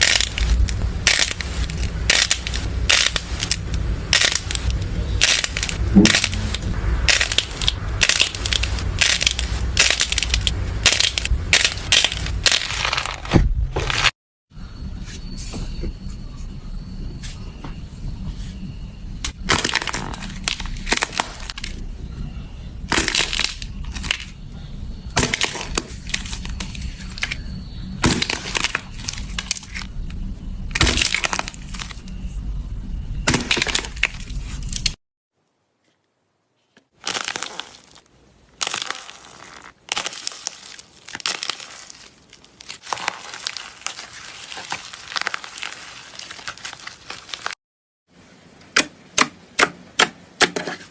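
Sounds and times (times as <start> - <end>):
slime crackling and popping: 0.0 - 13.3, 22.9 - 24.3, 30.7 - 32.0, 36.9 - 38.0, 38.6 - 47.6
low handling rumble: 0.0 - 35.0.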